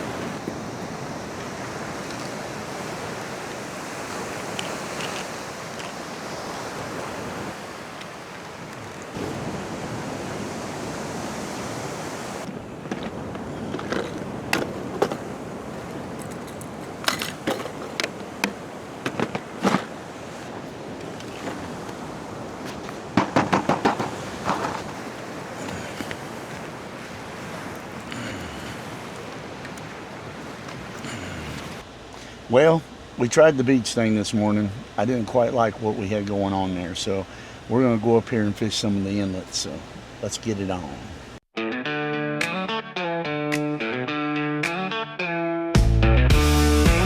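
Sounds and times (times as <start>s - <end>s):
surf washing onto beach: 0.0s - 41.4s
wind: 0.0s - 41.5s
sharp clicks and knocks: 23.2s - 24.8s.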